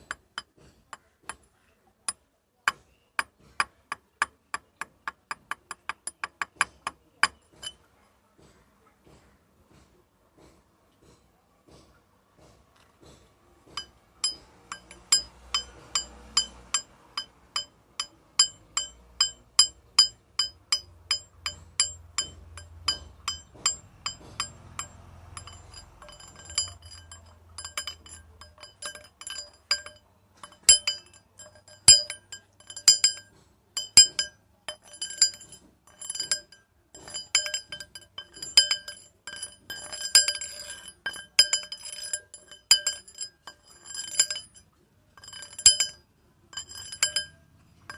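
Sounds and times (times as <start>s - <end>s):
metal rods clinking: 5.4s - 7.9s, 13.7s - 47.9s.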